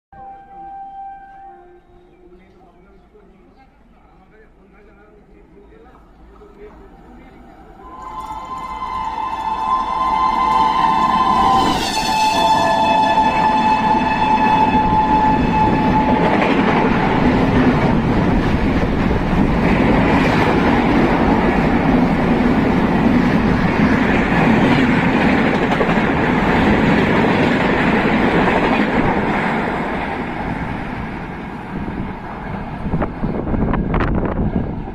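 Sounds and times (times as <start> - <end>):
train horn: 0.1 - 2.5, 7.8 - 17.0
train wheels clattering on rails: 14.9 - 30.6.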